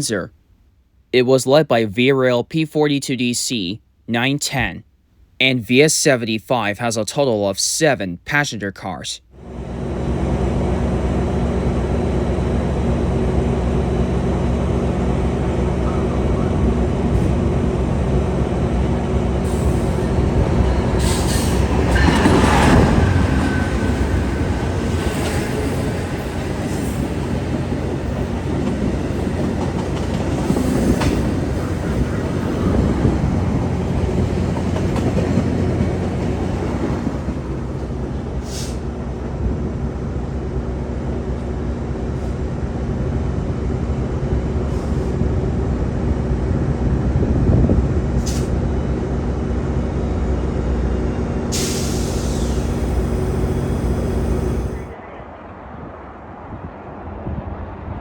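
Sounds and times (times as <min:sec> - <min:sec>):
diesel locomotive engine running: 0:09.4 - 0:55.0
train wheels clicking on rails: 0:09.6 - 0:42.4, 0:51.4 - 0:54.8.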